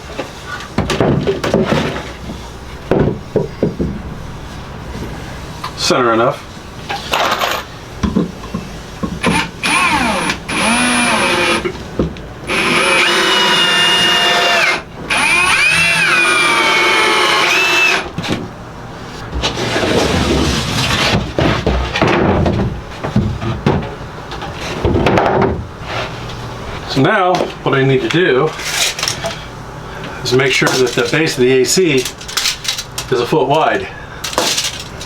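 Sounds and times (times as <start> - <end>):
electric power tool motor: 9.2 - 11.7, 12.5 - 18.1
rough uneven working noise: 9.2 - 11.8, 12.5 - 18.4, 34.2 - 35.0.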